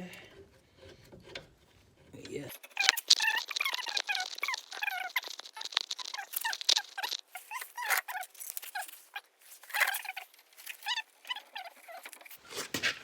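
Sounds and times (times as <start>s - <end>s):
animal high-pitched cries: 2.7s - 8.9s.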